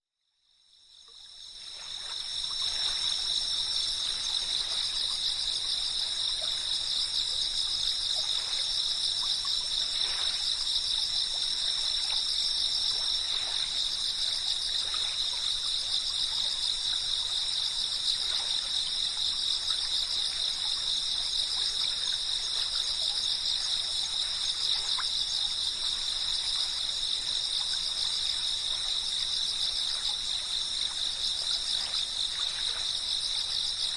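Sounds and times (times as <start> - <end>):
insects chirping: 0.5 - 33.9.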